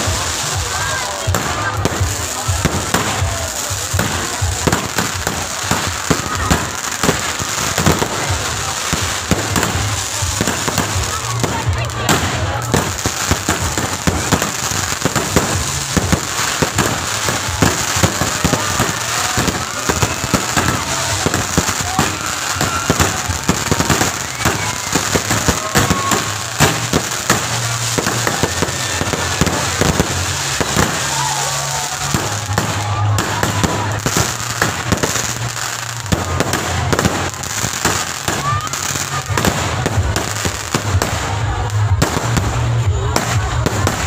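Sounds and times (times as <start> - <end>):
fireworks bangs and crackles: 0.0 - 44.0.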